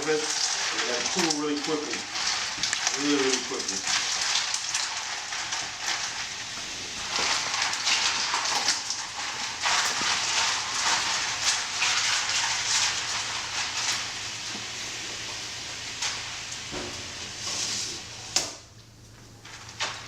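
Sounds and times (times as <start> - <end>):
ice water splashing in a bowl: 0.0 - 14.9.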